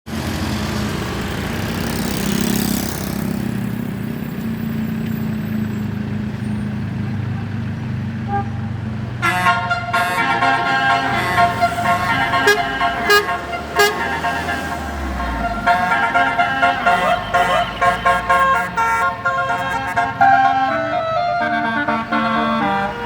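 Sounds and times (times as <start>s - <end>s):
bus engine running: 0.1s - 23.0s
musical bus horn chiming tune: 8.3s - 23.0s.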